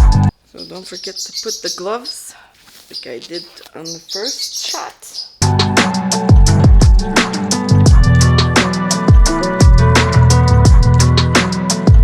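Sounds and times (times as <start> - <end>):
fast electronic beat music: 5.4 - 12.0.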